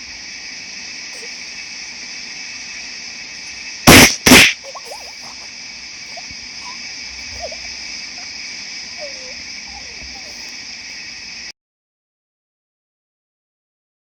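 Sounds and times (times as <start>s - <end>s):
insects chorus: 0.0s - 11.5s
loud sharp bangs: 3.9s - 4.6s.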